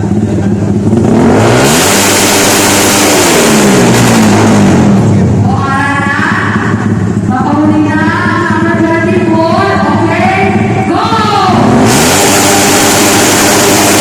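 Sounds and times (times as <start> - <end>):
engine revving through open exhaust: 0.0 - 5.6, 8.5 - 14.0.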